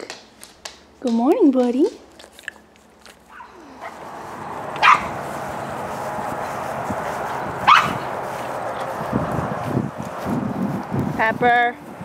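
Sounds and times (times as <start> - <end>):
dog barking: 3.3 - 4.1, 4.8 - 5.2, 7.6 - 8.1.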